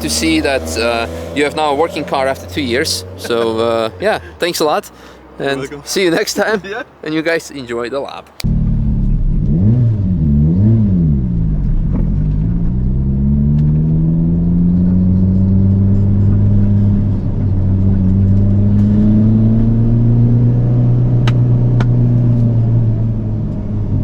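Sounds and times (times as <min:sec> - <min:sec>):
car engine running: 0:00.0 - 0:04.6, 0:08.4 - 0:20.0.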